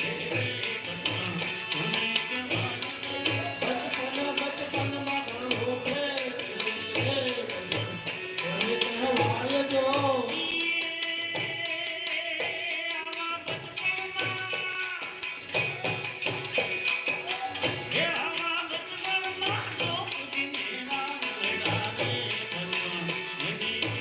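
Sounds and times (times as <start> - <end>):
person singing: 0.0 - 15.2, 17.2 - 24.0
hand-drum beat: 0.0 - 24.0
jingling percussion: 0.0 - 24.0.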